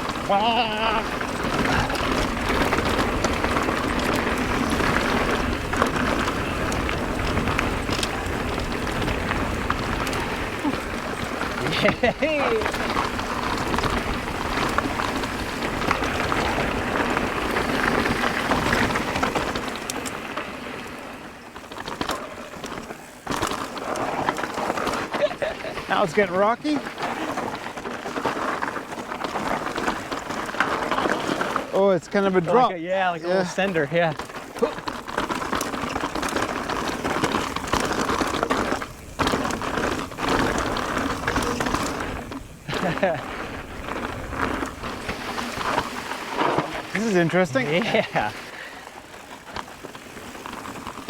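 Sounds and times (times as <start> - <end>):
bike clicks and knocks: 0.0 - 26.2, 26.8 - 31.8, 33.6 - 47.1
bike tyres crackling over grit: 0.0 - 51.0.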